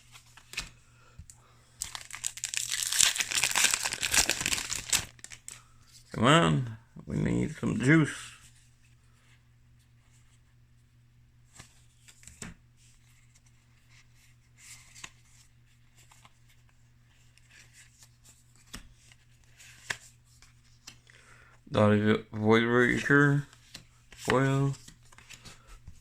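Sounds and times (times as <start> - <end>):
trading cards rustling: 1.8 - 5.6.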